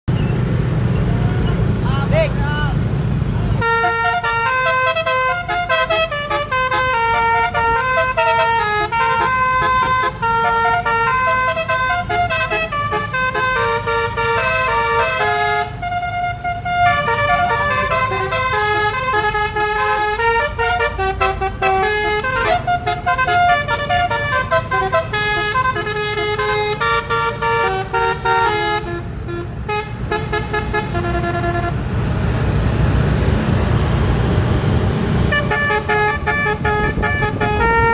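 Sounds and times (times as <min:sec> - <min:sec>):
low engine rumble: 0:00.1 - 0:37.9
multi-tone bus horn melody: 0:03.5 - 0:32.1, 0:35.1 - 0:37.9.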